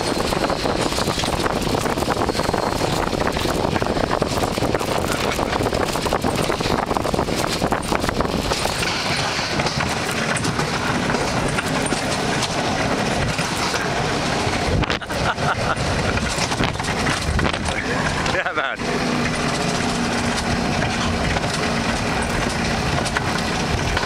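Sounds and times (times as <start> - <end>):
ride car rumbling on rails: 0.0 - 24.0.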